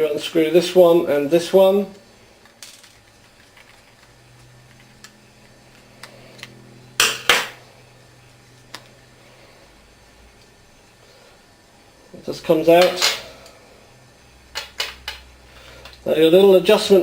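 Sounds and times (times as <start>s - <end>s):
metal parts clattering: 2.4s - 4.1s.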